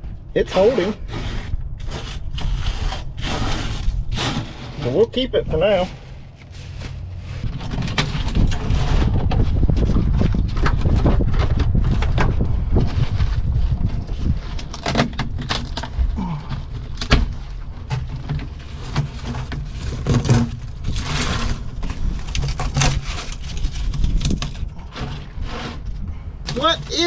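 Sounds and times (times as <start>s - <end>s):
wind rumbling on microphone: 0.0s - 27.0s
knocks and scrapes of debris: 0.5s - 27.0s
short rustle: 1.0s - 9.1s.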